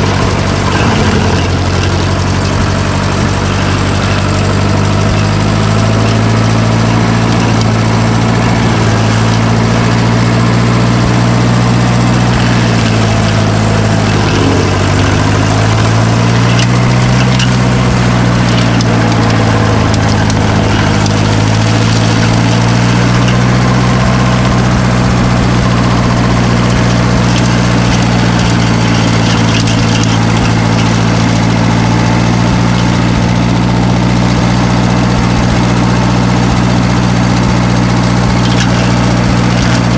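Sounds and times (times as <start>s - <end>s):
heavy machine engine running: 0.0s - 39.9s.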